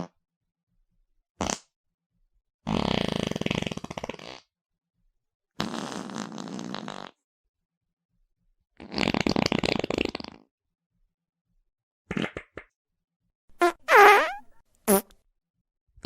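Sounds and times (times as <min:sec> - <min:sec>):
fart sound effects: 0:13.6 - 0:15.1.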